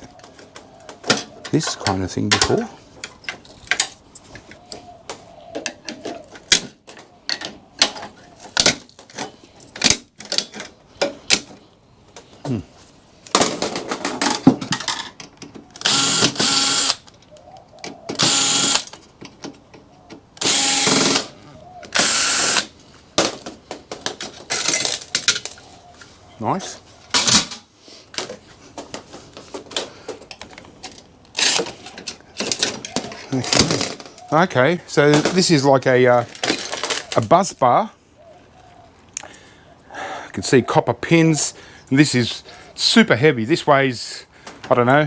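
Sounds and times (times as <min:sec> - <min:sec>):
power drill running: 0:15.8 - 0:17.0, 0:18.2 - 0:18.9, 0:20.4 - 0:21.3, 0:21.9 - 0:22.7.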